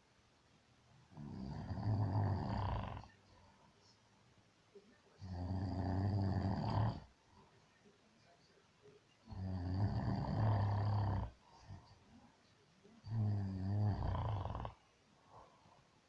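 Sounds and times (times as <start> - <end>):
person snoring: 1.1 - 3.1, 5.2 - 7.1, 9.3 - 11.8, 13.1 - 14.8.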